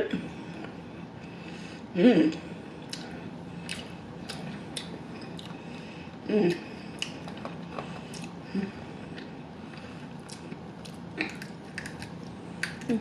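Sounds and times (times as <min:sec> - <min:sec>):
person chewing: 0:02.8 - 0:05.9, 0:06.5 - 0:13.0
person humming mm: 0:06.3 - 0:06.6.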